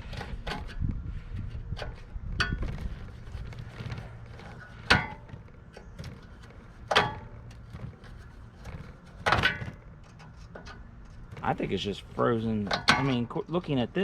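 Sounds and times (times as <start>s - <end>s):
low steady hum: 0.0s - 14.0s
sharp metallic clanks: 12.6s - 13.4s.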